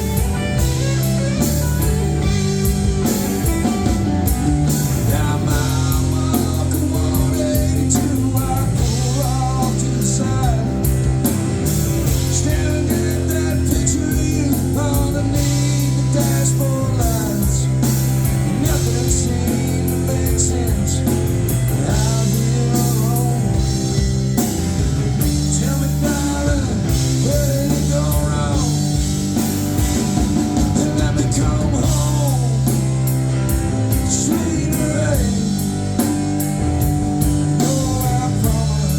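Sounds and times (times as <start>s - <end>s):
guitar melody: 0.0s - 38.9s
live band playing: 0.0s - 38.9s.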